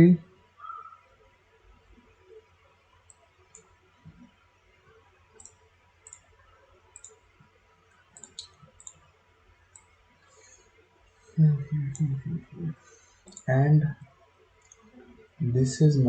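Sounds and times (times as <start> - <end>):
low background hum: 0.0 - 16.0
mouse and keyboard clicks: 8.2 - 9.0, 13.2 - 13.5.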